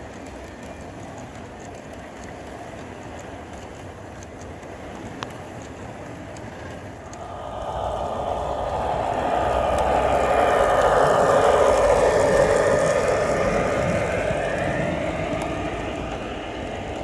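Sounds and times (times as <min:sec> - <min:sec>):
model train running: 0:00.0 - 0:17.0
steady whine: 0:07.1 - 0:17.0.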